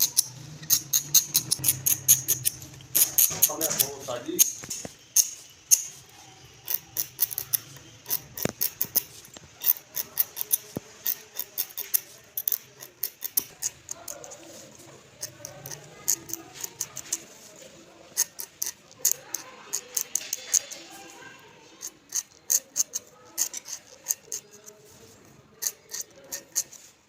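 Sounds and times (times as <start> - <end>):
sharp clicks and taps: 0.0 - 6.0, 6.6 - 17.3.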